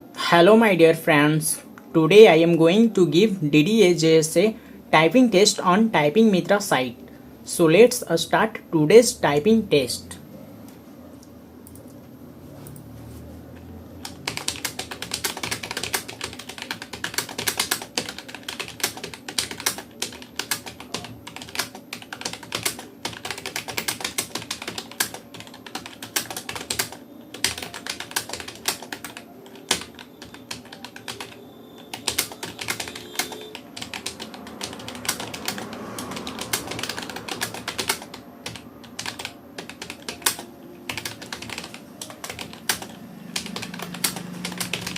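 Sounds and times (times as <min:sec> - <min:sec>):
fast keyboard typing: 0:14.0 - 0:44.9.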